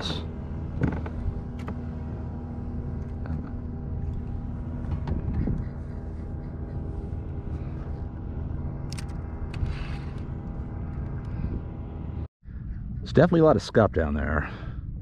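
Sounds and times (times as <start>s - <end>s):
steady motor hum: 0.0s - 12.3s.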